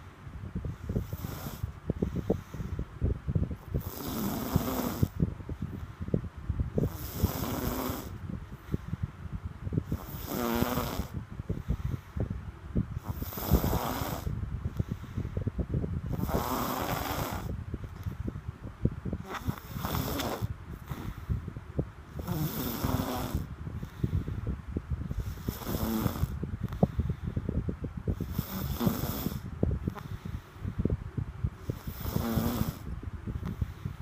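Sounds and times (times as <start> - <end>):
low crackling rumble: 0.0 - 34.0
rasping snores: 1.0 - 1.7, 3.8 - 5.2, 6.8 - 8.2, 10.0 - 11.2, 13.0 - 14.3, 16.1 - 17.5, 19.2 - 21.1, 22.2 - 23.5, 25.2 - 26.4, 28.2 - 29.4, 31.7 - 32.9.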